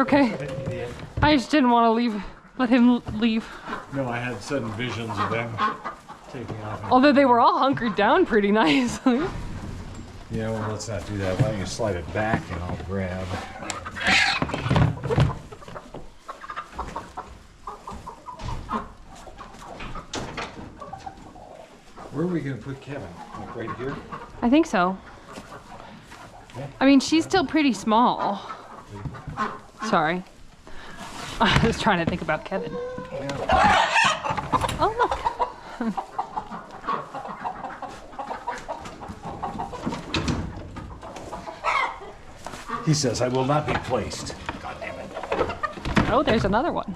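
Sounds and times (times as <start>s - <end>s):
chickens clucking: 0.0s - 46.9s
chickens scuffling: 0.0s - 46.9s
rustling: 0.0s - 46.9s.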